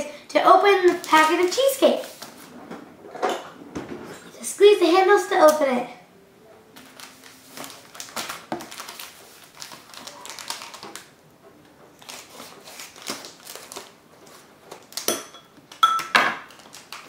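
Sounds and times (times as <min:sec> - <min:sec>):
packet crinkling: 0:06.8 - 0:11.2, 0:12.0 - 0:15.1, 0:16.5 - 0:17.0.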